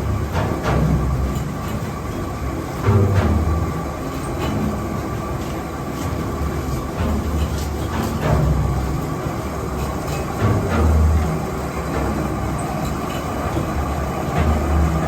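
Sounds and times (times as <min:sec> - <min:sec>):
mill mechanical rumble: 0:00.0 - 0:15.0.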